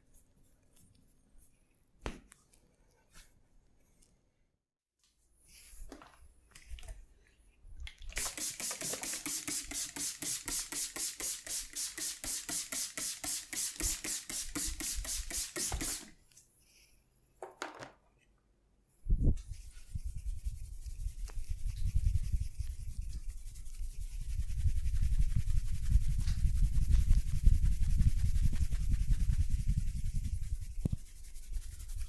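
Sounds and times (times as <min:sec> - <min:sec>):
hands massaging skin and hair: 0:08.2 - 0:16.1, 0:19.4 - 0:32.0.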